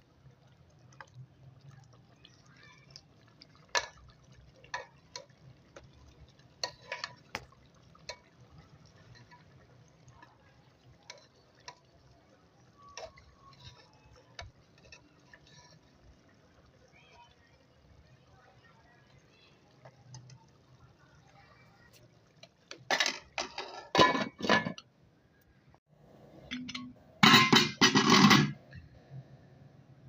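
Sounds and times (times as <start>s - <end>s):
sharp clicks and taps at a pot: 3.7s - 5.9s.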